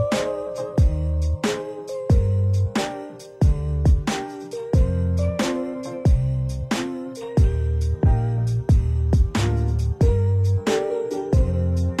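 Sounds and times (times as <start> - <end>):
held bass and melody notes: 0.0 - 12.0
snare and hi-hat hits: 0.0 - 12.0
kick drums: 0.8 - 1.0, 2.1 - 2.4, 3.4 - 4.2, 4.8 - 5.0, 6.1 - 6.4, 7.4 - 9.4, 10.0 - 10.3, 11.4 - 11.6.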